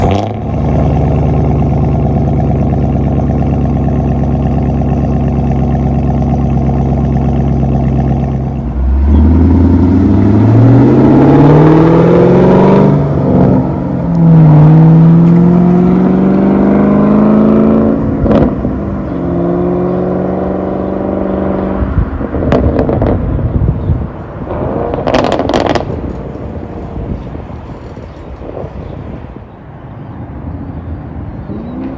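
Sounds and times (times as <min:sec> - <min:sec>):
car engine revving: 0:00.0 - 0:23.3, 0:24.4 - 0:29.2
exhaust pops and crackles: 0:24.4 - 0:29.2.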